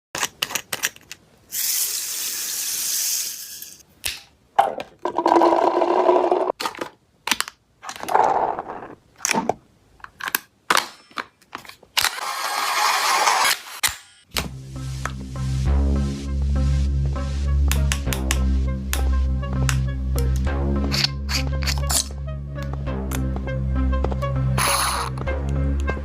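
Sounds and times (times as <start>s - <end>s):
hiss: 1.5s - 3.8s.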